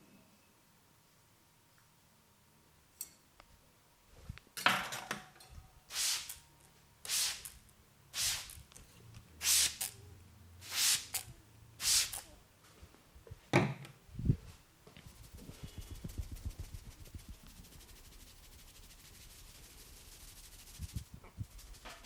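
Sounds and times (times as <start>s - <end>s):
crackling rustles of hair: 15.0s - 22.0s.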